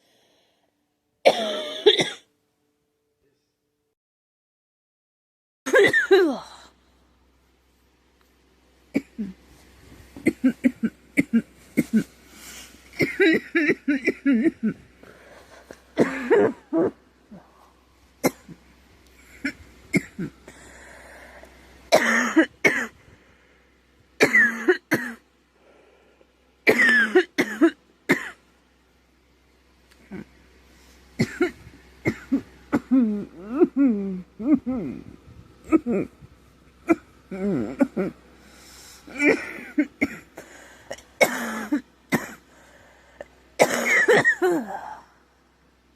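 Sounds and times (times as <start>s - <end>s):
girl coughing: 1.3s - 2.3s, 5.7s - 6.6s, 13.0s - 14.8s, 16.0s - 17.0s, 21.9s - 23.0s, 24.2s - 25.2s, 26.7s - 28.4s, 31.2s - 33.9s, 39.1s - 40.3s, 40.9s - 42.4s, 43.6s - 45.0s.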